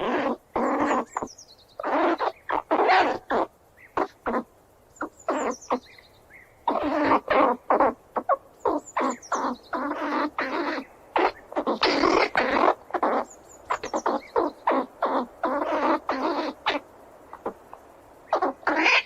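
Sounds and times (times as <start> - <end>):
squirrel squealing and chirping: 0.0 - 5.8, 6.6 - 17.6, 18.3 - 19.0.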